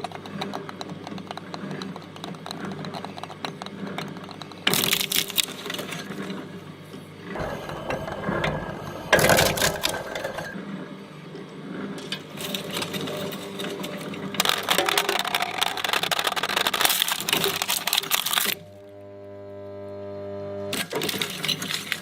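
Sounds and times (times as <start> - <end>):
shredder crackling: 4.6 - 6.2, 7.3 - 10.6, 12.3 - 18.6
low motor rumble: 7.3 - 10.6.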